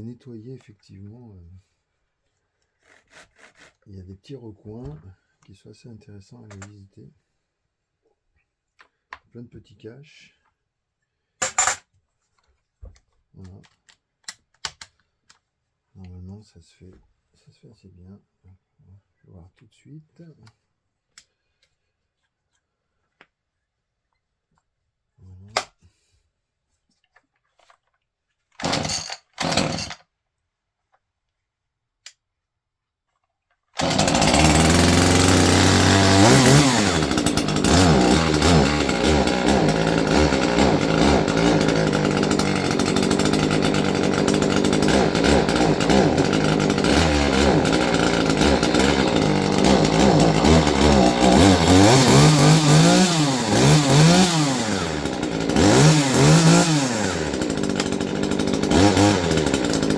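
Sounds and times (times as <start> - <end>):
chainsaw engine revving: 28.6 - 30.0, 33.8 - 59.9.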